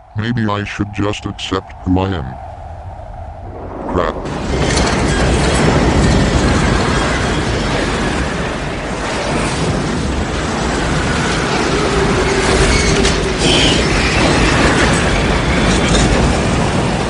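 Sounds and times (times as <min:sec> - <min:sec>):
tornado rushing roar: 0:00.0 - 0:17.0.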